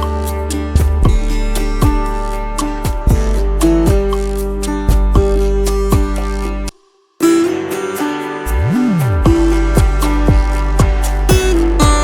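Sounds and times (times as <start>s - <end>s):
low bass and sustained notes: 8.5s - 12.0s.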